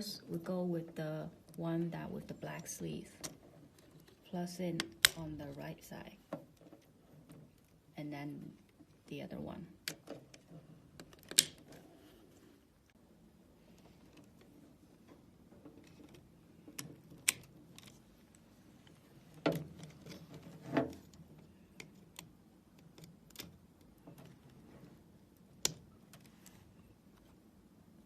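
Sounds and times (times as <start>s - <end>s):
wire connectors clicking into sockets: 4.8s - 5.4s, 11.0s - 11.7s, 16.1s - 18.0s, 25.6s - 26.3s.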